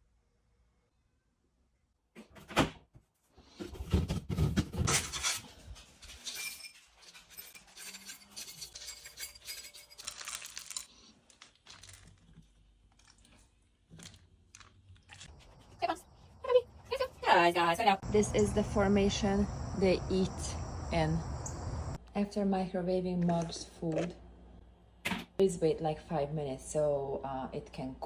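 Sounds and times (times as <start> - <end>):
dishes clattering and clinking: 6.0 - 10.8.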